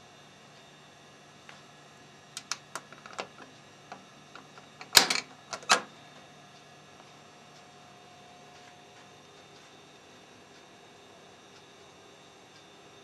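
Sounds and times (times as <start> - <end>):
jukebox mechanical clicks: 2.4 - 3.5, 4.4 - 5.9
jukebox mechanism clatter: 2.4 - 3.5, 4.4 - 5.9.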